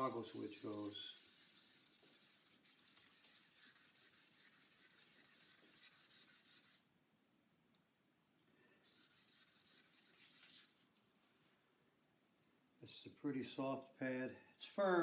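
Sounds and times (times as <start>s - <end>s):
wet sandpaper rubbing strokes: 0.0s - 6.8s, 8.9s - 10.8s.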